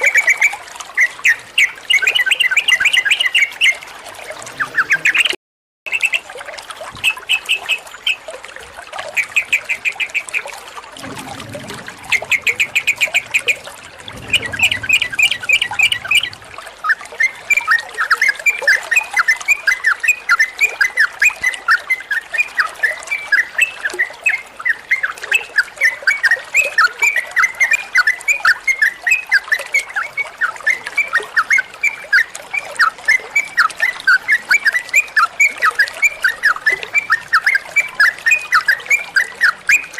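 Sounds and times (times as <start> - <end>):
bird singing trilled notes: 11.0 - 20.4.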